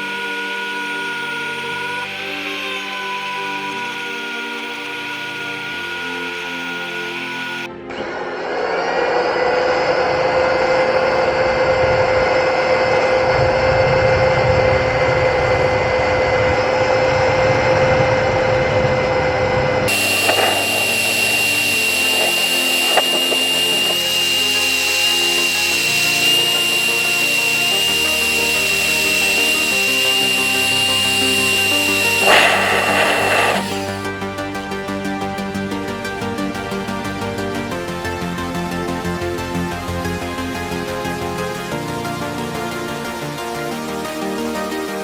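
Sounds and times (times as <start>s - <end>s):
electric power tool motor whine: 0.0s - 34.3s
background music: 0.0s - 45.0s.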